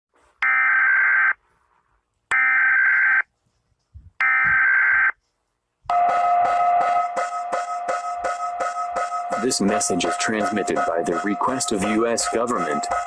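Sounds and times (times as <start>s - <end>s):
pulsing alarm tone: 4.2s - 5.2s, 5.9s - 13.0s.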